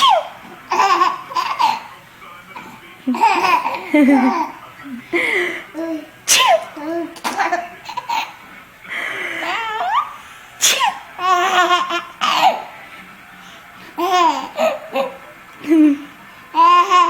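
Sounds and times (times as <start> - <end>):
adult fake sneezes: 6.3 - 7.4, 10.6 - 11.0.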